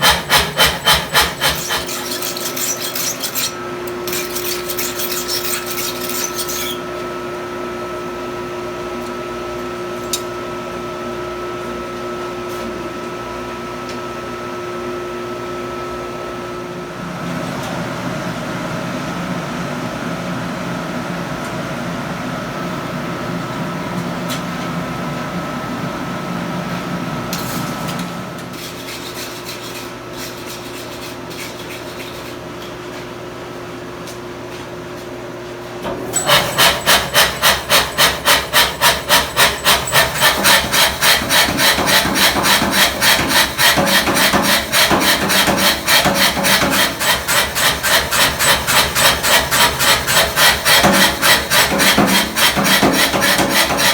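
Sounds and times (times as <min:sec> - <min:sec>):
rhythmic scraping: 0:00.0 - 0:03.5
mechanical hum: 0:00.0 - 0:53.9.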